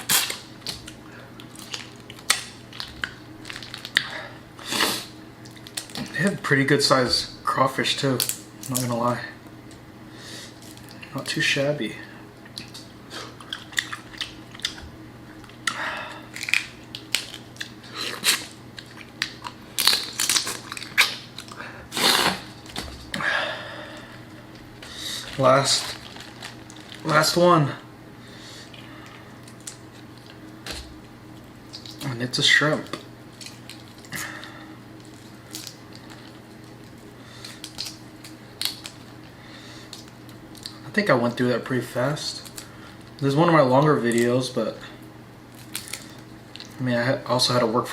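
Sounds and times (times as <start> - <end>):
shells cracking and peeling: 0.0 - 4.1, 5.4 - 6.1, 12.4 - 23.2, 23.9 - 27.2, 28.7 - 32.1, 32.8 - 40.8, 42.4 - 43.3, 45.5 - 46.8
faint steady hum: 0.0 - 47.9
chewing and mouth sounds: 12.4 - 14.8.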